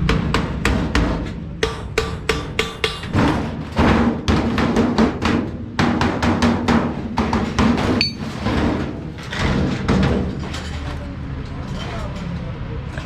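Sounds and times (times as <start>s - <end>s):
hammer striking sheet metal: 0.0s - 8.8s
steady metallic ring: 8.0s - 8.3s.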